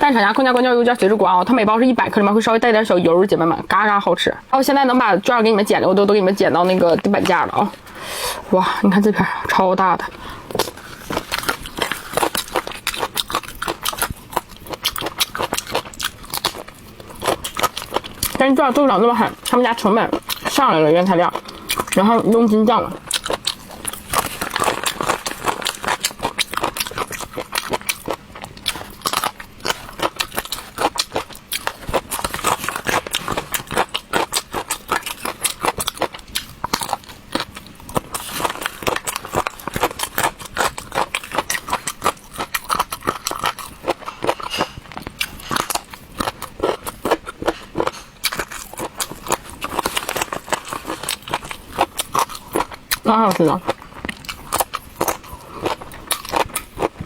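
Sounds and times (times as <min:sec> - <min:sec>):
crunchy snack chewing: 0:10.2 - 0:18.4, 0:22.9 - 0:57.0.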